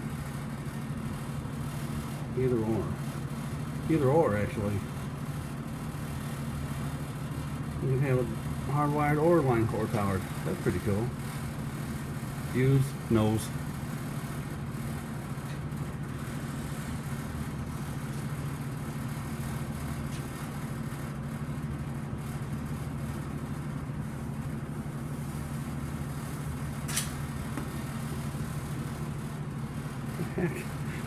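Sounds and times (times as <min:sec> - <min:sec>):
low mechanical hum: 0:00.0 - 0:31.0
sharp click: 0:26.9 - 0:27.7.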